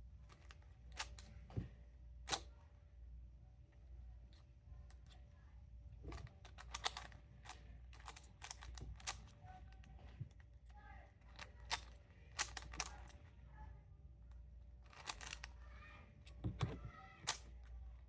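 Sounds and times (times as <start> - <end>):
plastic puzzle cube clicking: 6.2 - 9.3, 11.3 - 13.2, 14.9 - 15.5.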